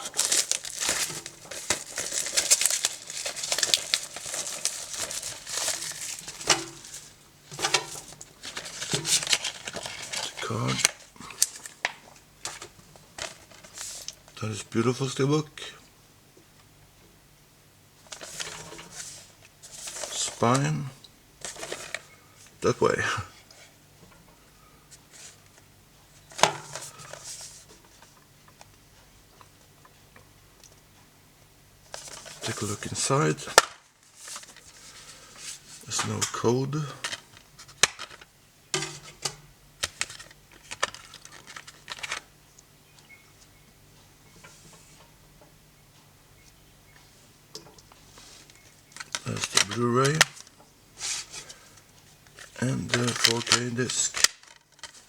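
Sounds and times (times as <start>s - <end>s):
plastic wrap crinkling and tearing: 0.0s - 12.6s.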